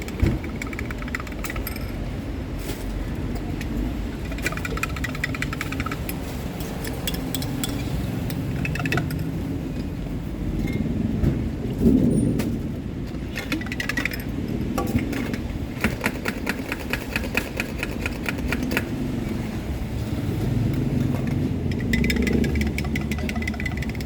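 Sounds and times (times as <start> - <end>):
motorbike engine running: 15.2 - 24.0
ice and utensils clinking in cup: 21.0 - 24.0.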